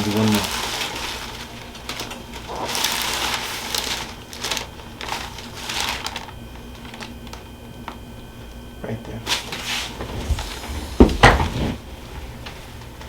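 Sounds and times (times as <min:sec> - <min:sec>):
rustling of hands and clothing: 0:09.3 - 0:13.0.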